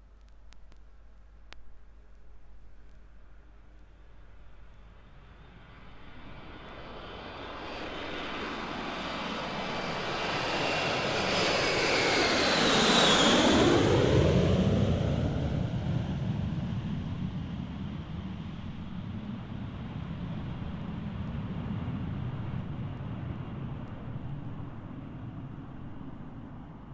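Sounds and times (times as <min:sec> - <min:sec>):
airplane flying past: 0:05.3 - 0:26.9.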